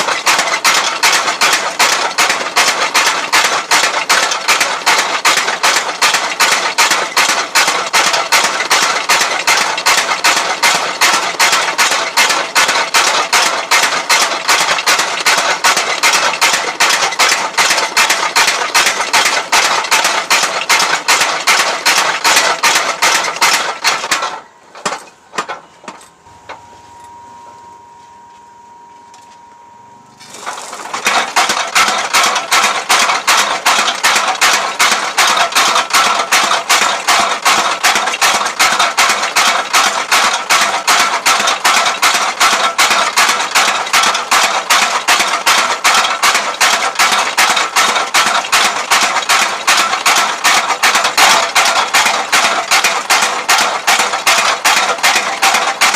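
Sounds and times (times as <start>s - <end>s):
power hammer pounding steel: 0.0s - 26.6s, 30.2s - 55.9s
faint machine hum: 24.3s - 31.3s.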